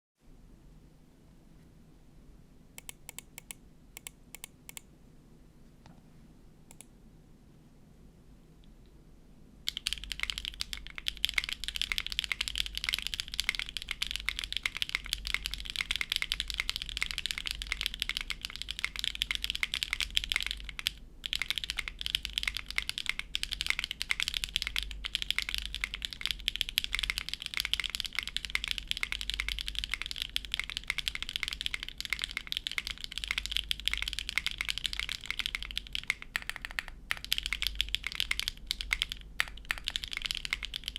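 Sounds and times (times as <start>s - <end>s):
mechanical keyboard typing: 9.7s - 40.9s.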